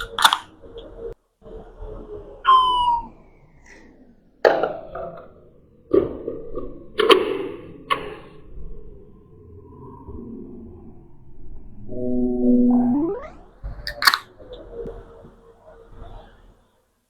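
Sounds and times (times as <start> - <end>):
short falling squeak: 2.5 - 3.2.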